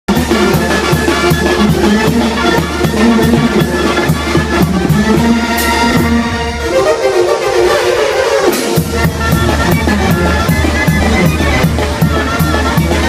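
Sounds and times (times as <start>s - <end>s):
brass band playing: 0.1s - 13.0s.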